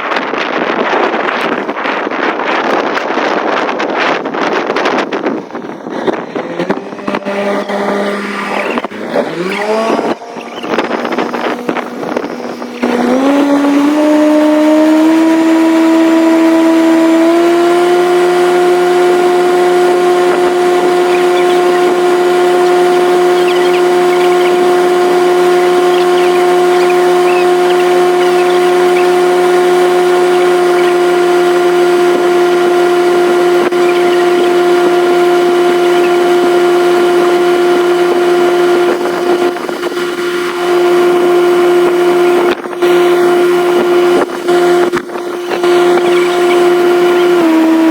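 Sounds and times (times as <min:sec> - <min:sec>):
engine running at high pitch: 0:00.0 - 0:47.9.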